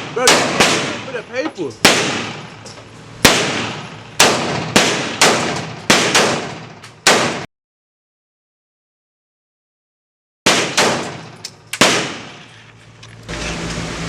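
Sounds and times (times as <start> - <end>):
gunshots echoing indoors: 0.0 - 2.6, 3.2 - 7.5, 10.4 - 12.4.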